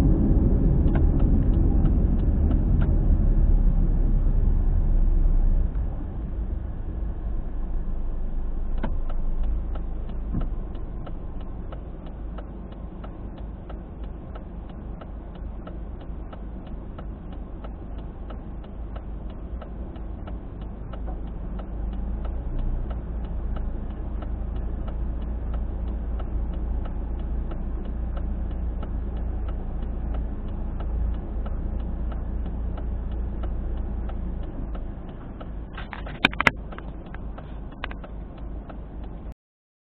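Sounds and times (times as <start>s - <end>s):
car road rumble: 0.0s - 39.4s
regular ticking from wheel: 7.6s - 39.3s.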